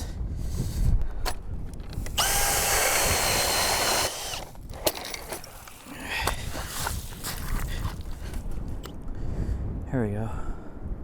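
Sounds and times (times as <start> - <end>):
wind rumble on microphone: 0.0 - 4.9, 6.1 - 11.0
drill-powered ice auger whining: 2.0 - 5.4.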